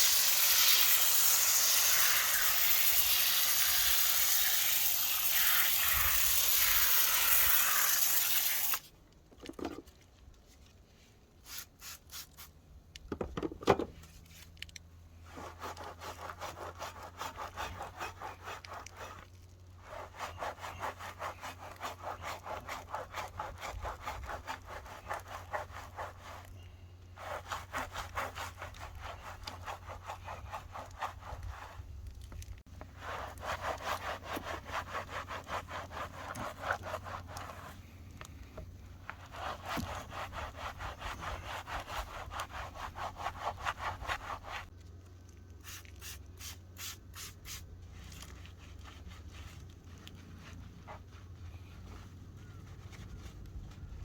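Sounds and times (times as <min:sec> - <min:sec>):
water spray hissing: 0:00.0 - 0:08.8
scrubbing a car by hand: 0:00.0 - 0:09.5, 0:14.0 - 0:44.8, 0:45.6 - 0:54.0.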